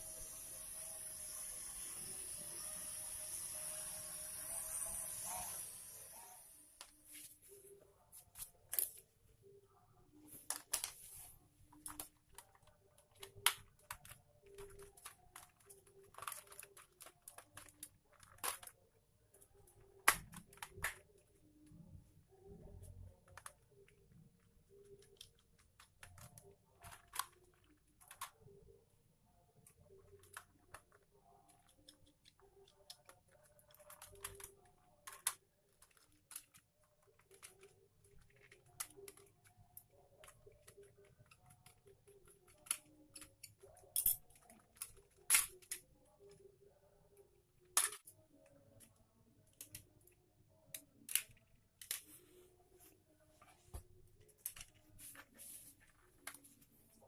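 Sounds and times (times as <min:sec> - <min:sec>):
small parts clicking and tapping: 0:11.7 - 0:28.8, 0:29.6 - 0:52.1, 0:54.0 - 0:54.9.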